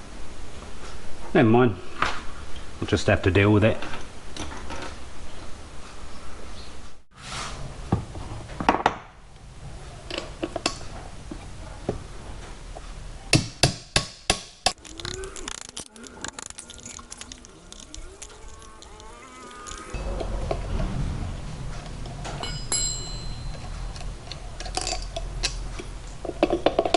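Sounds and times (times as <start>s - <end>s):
metal tools knocking and clattering: 22.3s - 26.9s.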